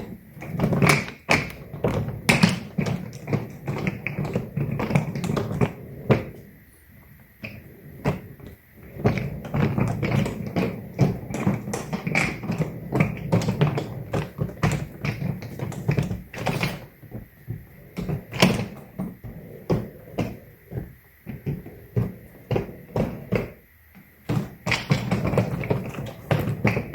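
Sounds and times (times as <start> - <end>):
suitcase handling taps and clatter: 9.1 - 23.6.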